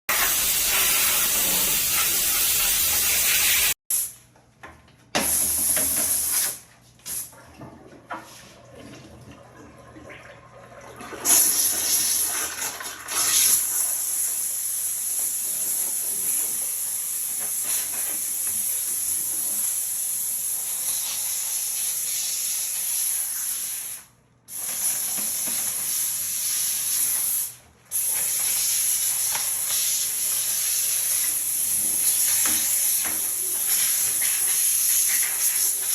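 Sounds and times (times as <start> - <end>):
steam cleaner hissing: 0.1 - 4.1, 13.3 - 35.9.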